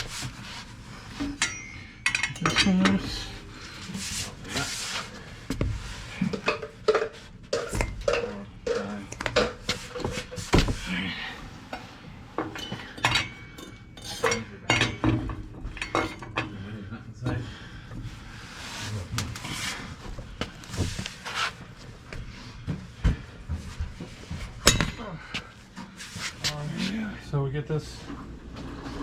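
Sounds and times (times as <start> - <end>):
hand tools clinking on lug nuts: 1.2 - 3.4, 12.4 - 16.6.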